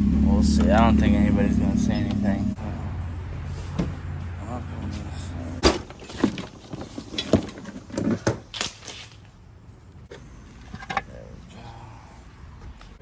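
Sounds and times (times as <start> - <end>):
car engine idling: 0.0 - 6.2
knocks and clunks: 5.6 - 8.6.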